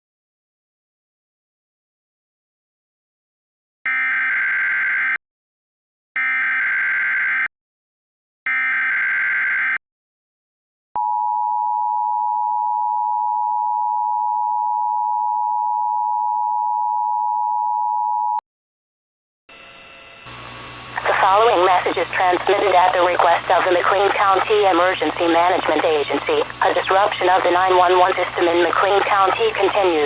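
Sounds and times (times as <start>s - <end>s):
data tone bursts: 21.0s - 30.0s.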